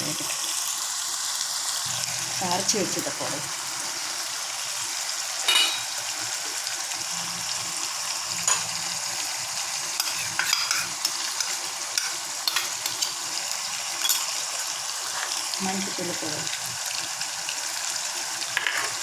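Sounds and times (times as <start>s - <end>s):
chicken sizzling in hot oil: 0.0s - 19.0s
spatula scraping and clinking pan: 5.4s - 6.0s, 10.0s - 13.1s, 14.0s - 14.4s.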